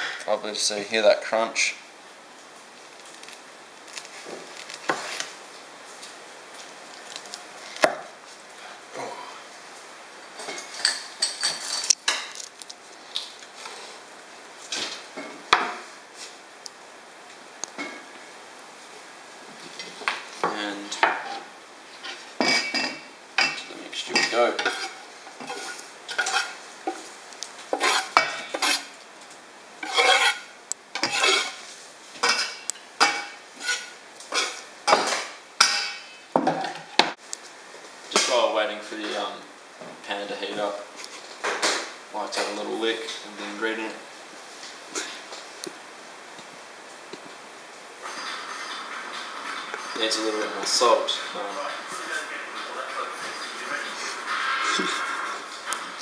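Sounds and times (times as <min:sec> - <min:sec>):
utensils clattering on dishes: 0:10.4 - 0:12.4, 0:22.0 - 0:27.0, 0:27.8 - 0:28.9, 0:29.8 - 0:31.6, 0:32.2 - 0:36.9, 0:48.0 - 0:56.0
utensil scraping a bowl: 0:24.1 - 0:27.0, 0:27.7 - 0:28.9, 0:29.8 - 0:34.6.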